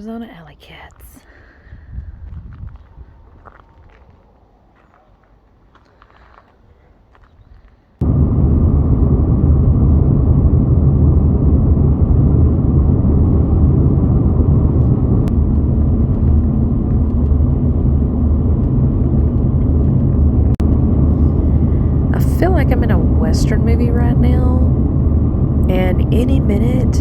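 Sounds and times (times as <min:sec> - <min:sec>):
road and engine rumble: 0:08.0 - 0:27.0.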